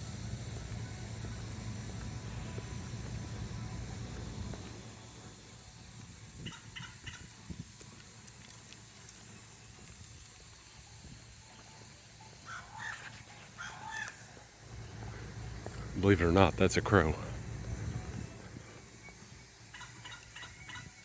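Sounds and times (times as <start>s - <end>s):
crow calling: 12.5s - 14.2s, 19.7s - 20.9s.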